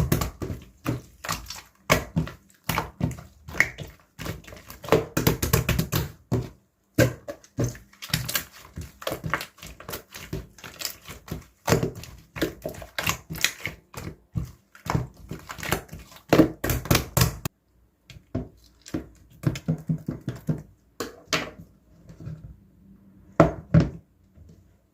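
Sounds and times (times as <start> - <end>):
slime squishing by hand: 0.0 - 17.5.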